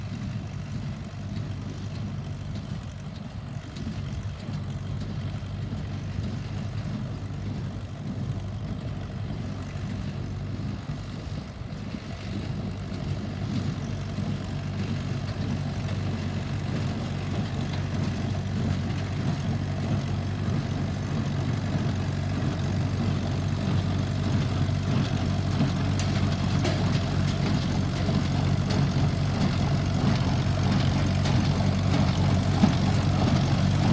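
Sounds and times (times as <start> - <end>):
tractor engine running: 0.0 - 33.9
baler working: 9.6 - 33.9.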